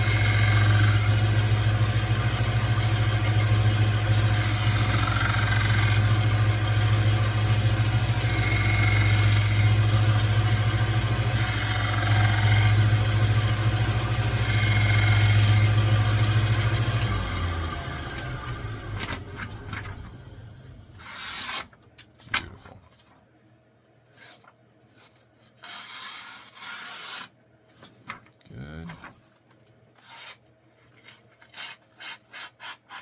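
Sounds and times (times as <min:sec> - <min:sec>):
belt sander motor running: 0:00.0 - 0:21.0
knife scraping paper: 0:21.0 - 0:23.2, 0:24.1 - 0:28.3, 0:30.0 - 0:33.0.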